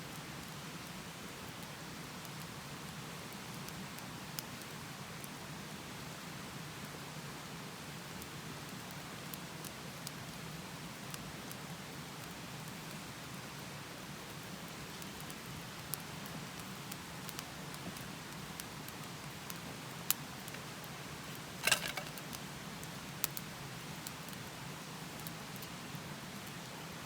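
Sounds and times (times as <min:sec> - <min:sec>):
campfire crackling: 0:08.7 - 0:26.8.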